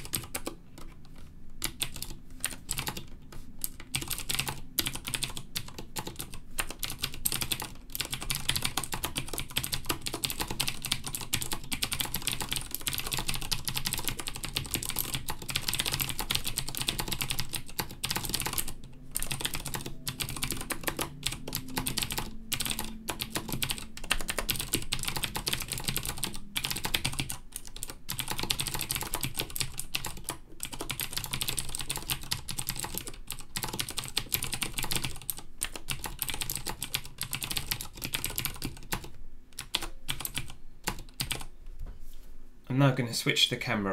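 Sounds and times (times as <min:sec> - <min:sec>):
mechanical keyboard typing clicks: 0:00.0 - 0:41.5.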